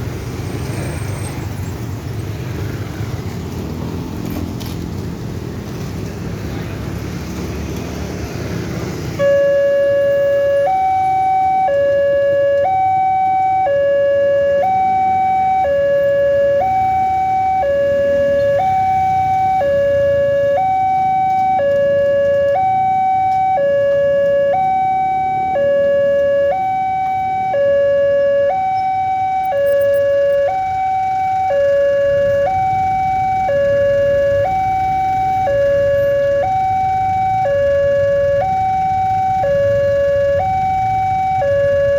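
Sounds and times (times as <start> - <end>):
hi-lo warning siren: 9.1 - 41.9.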